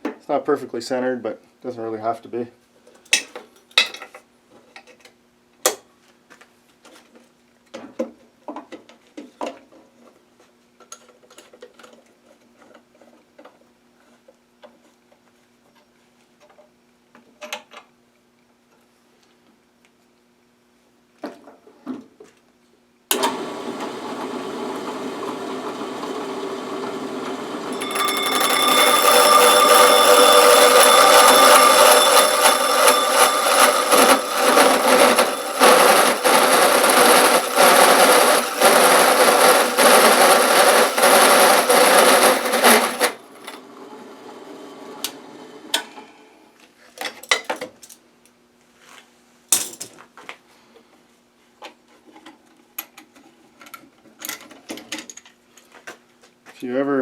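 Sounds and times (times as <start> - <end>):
drill hole saw grinding plastic: 27.7 - 43.2.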